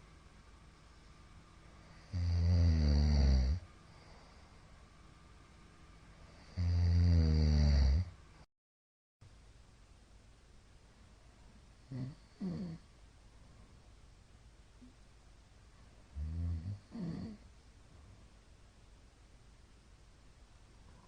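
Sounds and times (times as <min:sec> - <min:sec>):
man snoring loudly: 0:01.9 - 0:03.6, 0:06.4 - 0:08.1, 0:11.9 - 0:12.8, 0:16.2 - 0:17.4.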